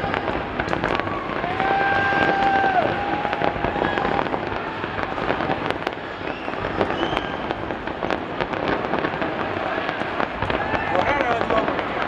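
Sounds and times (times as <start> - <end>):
fireworks crackling and popping: 0.0 - 12.0.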